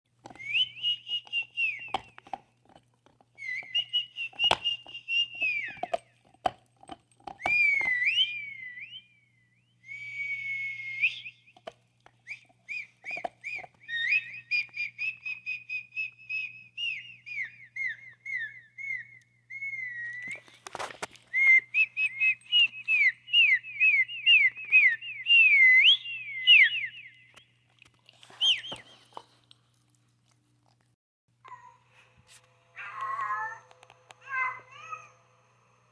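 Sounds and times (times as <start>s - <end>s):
high chirping whistles: 0.4s - 2.2s, 3.4s - 6.0s, 7.4s - 11.6s, 12.3s - 20.6s, 21.3s - 27.6s, 28.3s - 29.2s, 32.6s - 35.9s.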